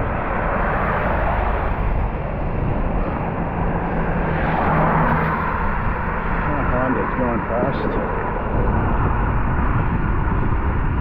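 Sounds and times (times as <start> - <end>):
low engine hum: 0.0 - 11.0
wind and road rush: 0.0 - 11.0.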